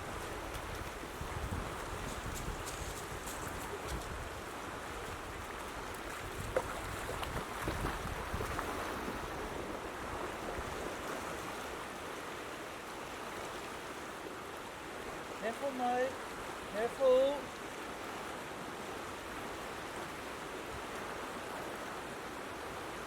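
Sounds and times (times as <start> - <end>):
wind rumbling on microphone: 0.0 - 11.7
floodwater rushing in a creek: 0.0 - 23.0.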